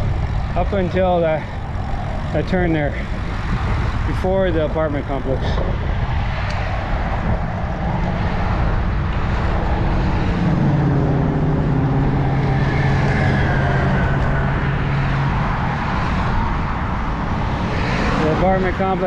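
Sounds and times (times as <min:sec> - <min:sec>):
road rumble: 0:00.0 - 0:19.0
car engine passing: 0:05.7 - 0:19.0.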